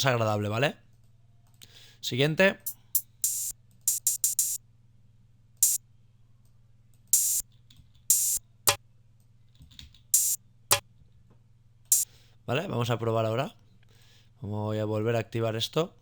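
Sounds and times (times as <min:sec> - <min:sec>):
hissy drum hits: 0:02.7 - 0:04.6, 0:07.2 - 0:07.4, 0:08.1 - 0:08.4, 0:10.2 - 0:10.4.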